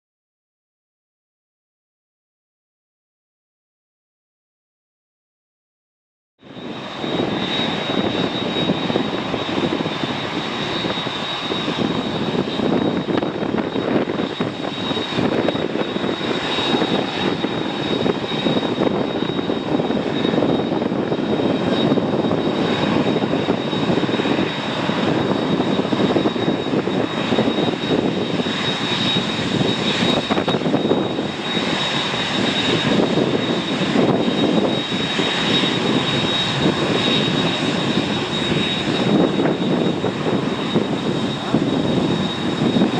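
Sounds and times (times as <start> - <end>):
high engine whine: 6.4 - 42.9
jet engines rumbling: 6.4 - 42.9.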